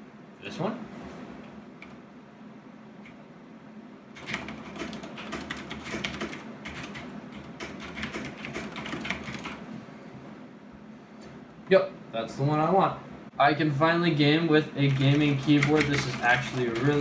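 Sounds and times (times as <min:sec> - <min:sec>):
mechanical keyboard typing: 0:04.2 - 0:09.6, 0:14.9 - 0:17.0.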